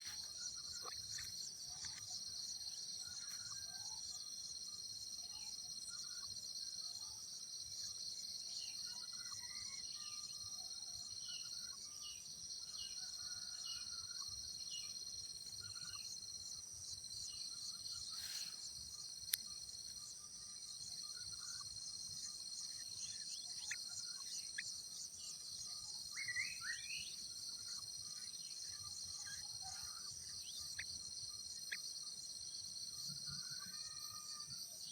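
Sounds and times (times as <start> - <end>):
crickets chirping: 0.0 - 34.9
bird chirps: 21.0 - 31.9.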